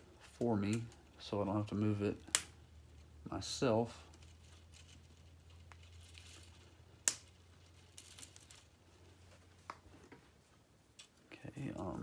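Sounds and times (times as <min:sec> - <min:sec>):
plastic pieces rustling and clicking: 0:04.1 - 0:08.8.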